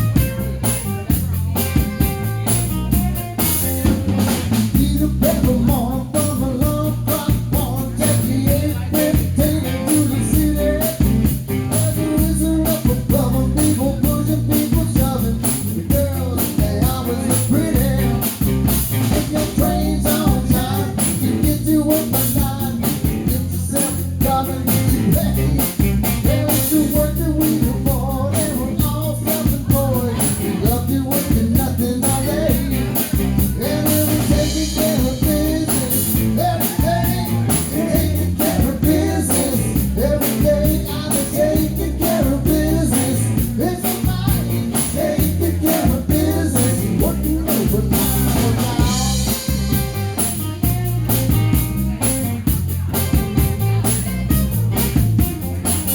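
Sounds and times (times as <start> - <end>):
drum kit: 0.0 - 55.9
electric guitar: 0.0 - 55.9
melodic lead line: 24.0 - 55.9.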